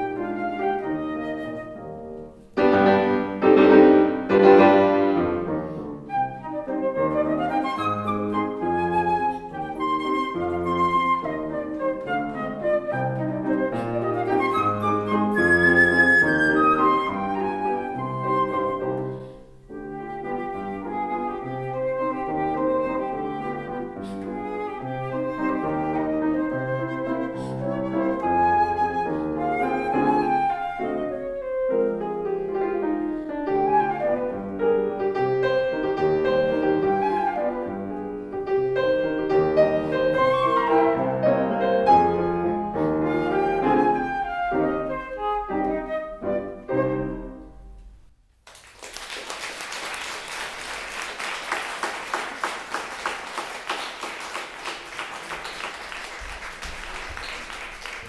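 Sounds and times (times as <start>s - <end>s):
flute and piano waltz: 0.0s - 48.1s
audience applauding: 48.4s - 58.0s.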